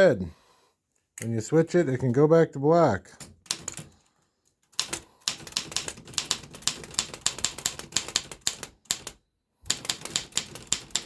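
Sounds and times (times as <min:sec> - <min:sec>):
manual typewriter keystrokes: 0:03.2 - 0:11.0.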